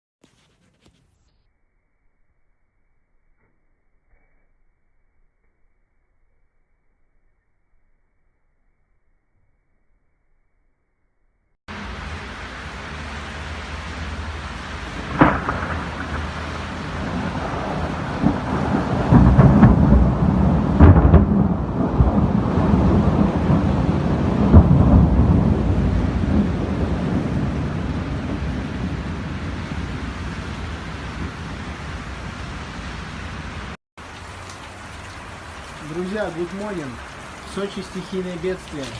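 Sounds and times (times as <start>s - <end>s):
rolling thunder: 11.7s - 33.8s
thunderclap: 11.7s - 33.8s
heavy rain: 11.7s - 38.9s.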